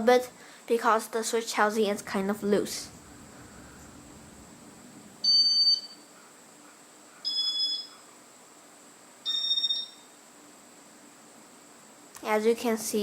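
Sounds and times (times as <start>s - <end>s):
short electronic beeps: 5.2s - 6.0s.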